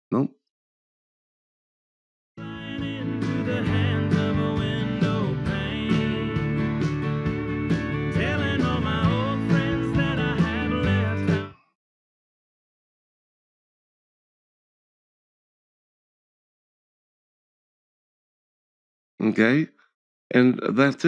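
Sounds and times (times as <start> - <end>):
country music with guitar: 2.4 - 11.6.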